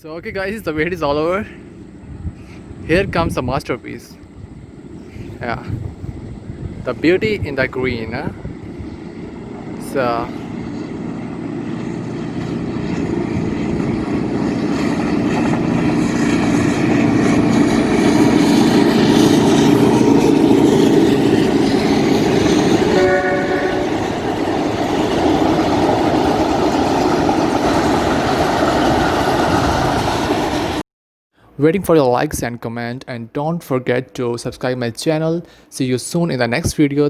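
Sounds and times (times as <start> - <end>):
train rumbling on rails: 0.2 - 30.8
train horn: 21.1 - 24.8.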